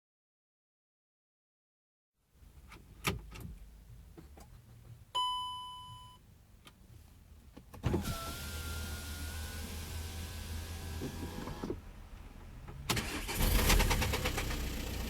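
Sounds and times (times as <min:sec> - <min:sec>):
diesel engine starting and idling: 0:12.6 - 0:15.0.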